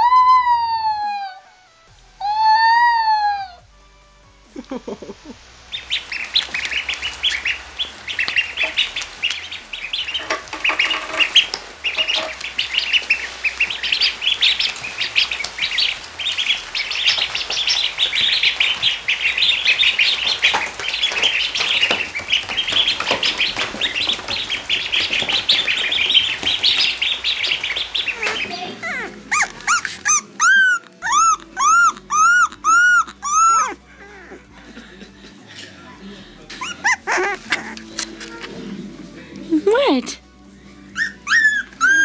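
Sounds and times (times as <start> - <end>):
small birds peeping: 4.5 - 42.0
lower bird calls: 5.3 - 34.4, 40.9 - 42.0.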